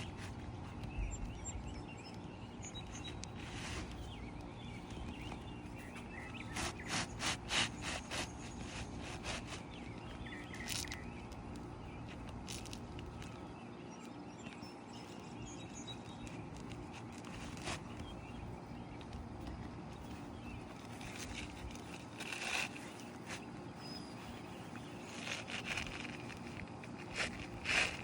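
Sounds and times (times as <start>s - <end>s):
outdoor background noise: 0.0s - 28.0s
scrapes on shingle roof: 3.0s - 11.1s, 16.2s - 18.3s, 20.0s - 28.0s.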